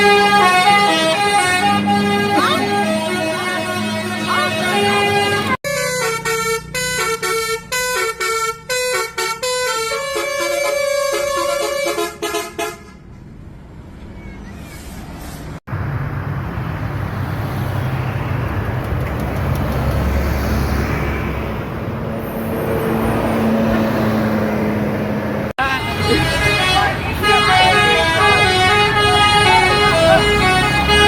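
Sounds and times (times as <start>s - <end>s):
bus musical air horn tune: 0.0s - 13.2s, 25.6s - 31.0s
vehicle and road rumble: 0.0s - 31.0s.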